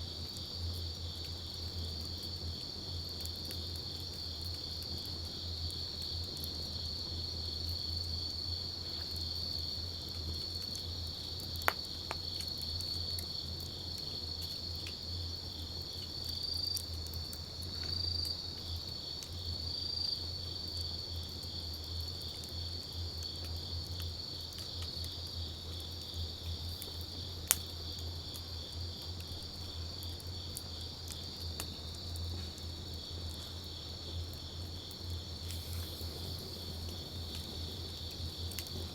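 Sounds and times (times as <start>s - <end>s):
campfire crackling: 0.1s - 38.9s
insects chirring: 0.3s - 38.9s
sharp fire pops: 35.4s - 38.9s.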